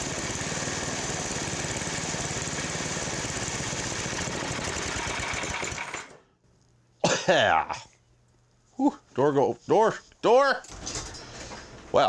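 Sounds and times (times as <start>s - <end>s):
small gasoline engine running: 0.0s - 6.2s.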